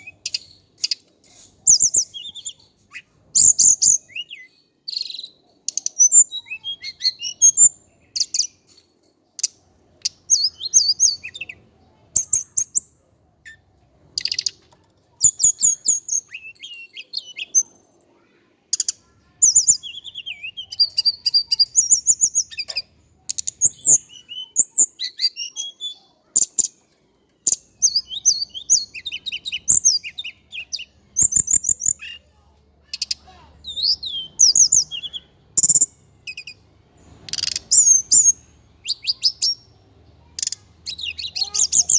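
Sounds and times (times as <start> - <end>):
bird singing whistled warbles: 1.7 - 8.6, 9.4 - 11.6, 15.2 - 18.1, 19.4 - 26.7, 27.4 - 32.3, 33.0 - 36.6, 37.3 - 39.7, 40.4 - 41.9.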